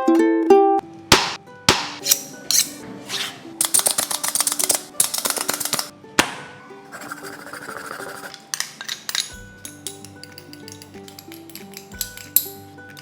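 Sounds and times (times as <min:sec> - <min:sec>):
light background music: 0:00.0 - 0:13.0
sharp knock: 0:01.1 - 0:02.1, 0:06.2 - 0:06.5.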